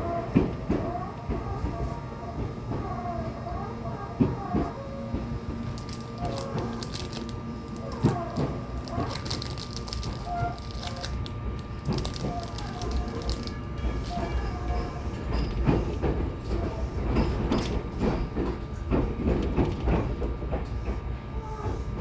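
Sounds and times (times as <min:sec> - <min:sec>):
train wheels rumbling on rail: 0:03.9 - 0:22.0
wheels clicking over rail joints: 0:05.7 - 0:14.4.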